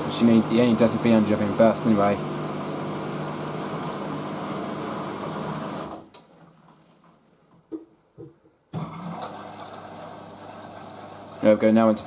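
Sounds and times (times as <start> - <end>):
washing machine motor humming: 0.0 - 6.1, 8.8 - 12.0.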